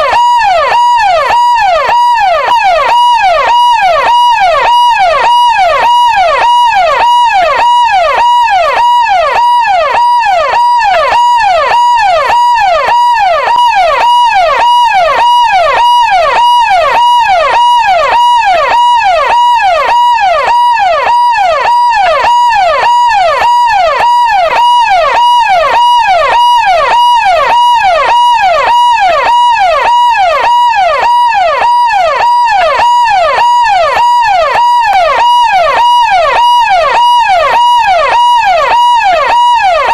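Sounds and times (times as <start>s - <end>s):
electronic police siren: 0.0s - 39.9s.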